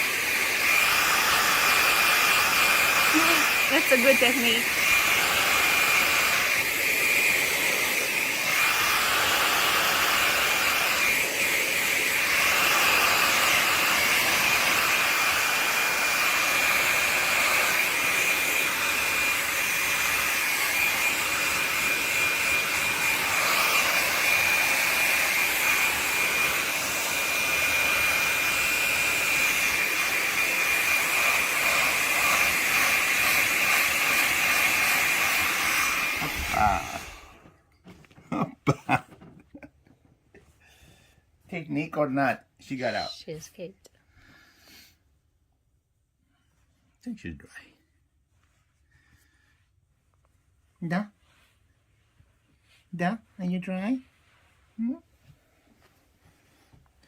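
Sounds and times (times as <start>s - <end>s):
hair dryer running: 0.0s - 37.6s.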